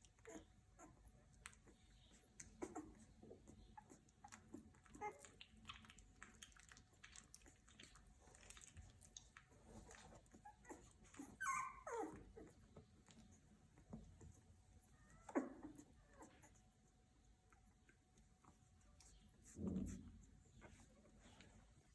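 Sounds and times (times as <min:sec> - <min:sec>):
puppies suckling: 0:00.0 - 0:21.9
puppy squeak: 0:10.5 - 0:12.2.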